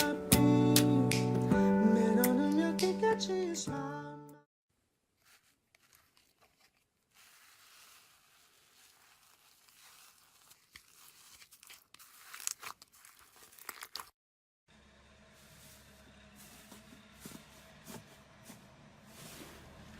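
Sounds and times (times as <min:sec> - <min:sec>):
slime crackling and popping: 0:09.7 - 0:14.1.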